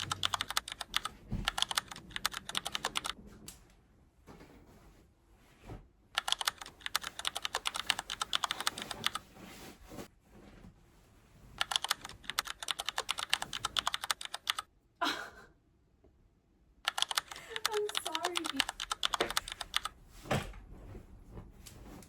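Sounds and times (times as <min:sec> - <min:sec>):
computer keyboard typing: 0:00.0 - 0:03.2, 0:06.2 - 0:09.2, 0:11.6 - 0:14.7, 0:16.8 - 0:19.9.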